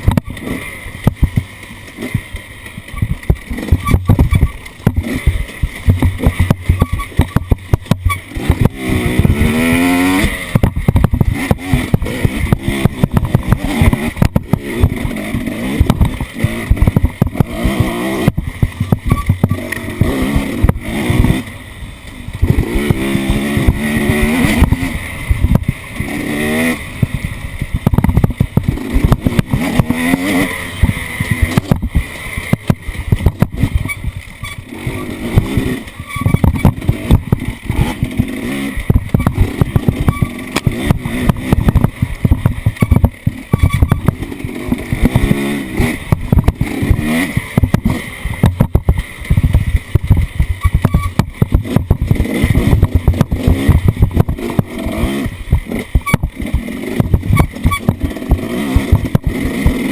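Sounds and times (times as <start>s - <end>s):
vehicle knocks and rattles: 0.0s - 9.5s, 27.7s - 45.5s, 46.1s - 54.7s
off-road vehicle engine revving: 0.0s - 59.9s.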